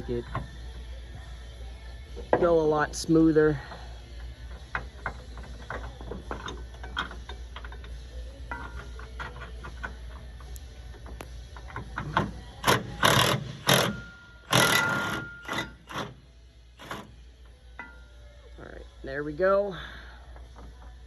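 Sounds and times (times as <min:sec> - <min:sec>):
hand ratchet clicking: 0:04.7 - 0:16.2
harsh metal tool bursts: 0:12.7 - 0:16.1.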